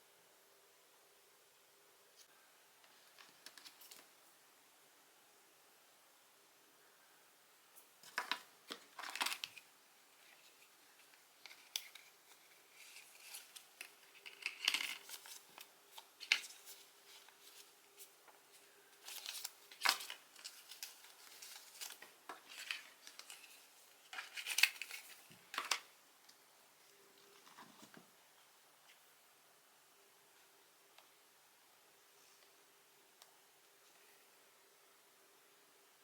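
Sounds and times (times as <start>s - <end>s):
packaging crinkling and tearing: 12.7s - 17.7s, 19.0s - 25.8s.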